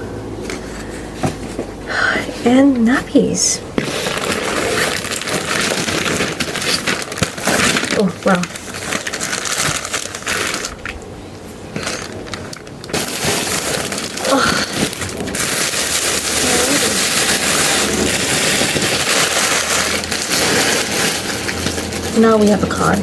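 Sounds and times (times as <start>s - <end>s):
packaging crinkling and rustling: 3.2s - 23.0s.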